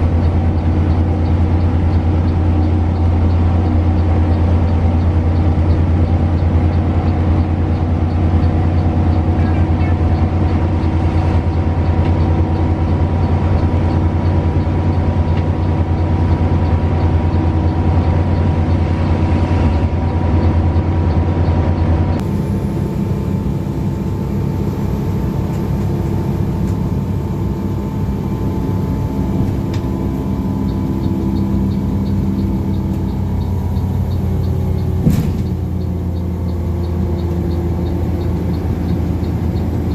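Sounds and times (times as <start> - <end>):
coach engine drone: 0.0 - 39.9
road noise: 0.0 - 39.9.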